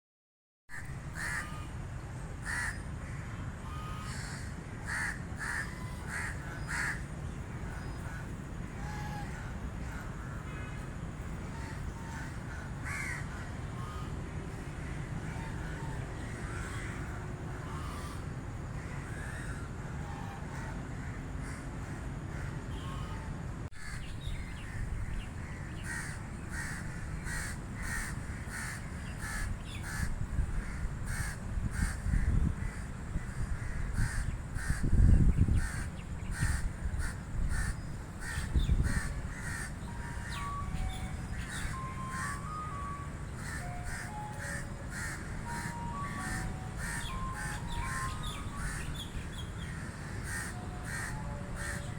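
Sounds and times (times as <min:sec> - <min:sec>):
crows cawing: 0:00.7 - 0:01.6, 0:02.4 - 0:07.1, 0:11.5 - 0:23.2, 0:23.8 - 0:51.9.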